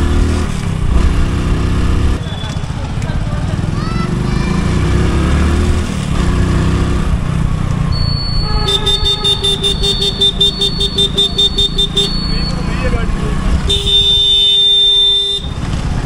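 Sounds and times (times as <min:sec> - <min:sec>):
motorbike engine and road rumble: 0:00.0 - 0:16.0
rapid high electronic beeping: 0:07.9 - 0:12.8.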